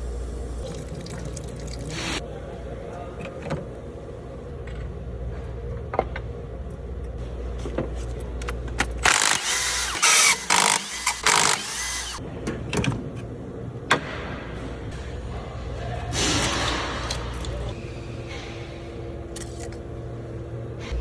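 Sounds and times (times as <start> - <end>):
steady low hum: 0.0 - 21.0
loud power tool bursts: 9.0 - 12.2.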